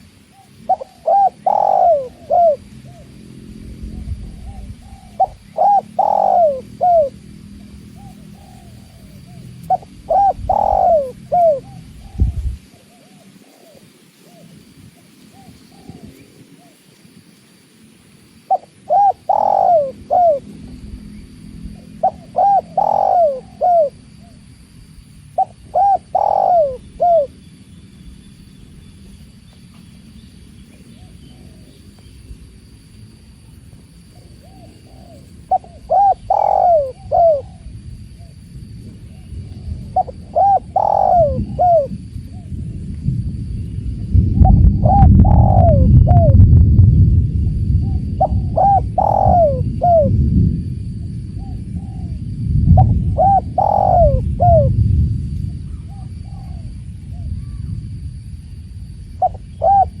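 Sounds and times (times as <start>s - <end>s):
dove cooing: 0.0s - 16.9s, 18.5s - 24.4s, 25.3s - 27.4s, 30.6s - 32.0s, 34.0s - 42.6s, 44.3s - 46.6s, 47.8s - 50.3s, 51.4s - 54.8s, 55.5s - 57.7s, 59.2s - 60.0s.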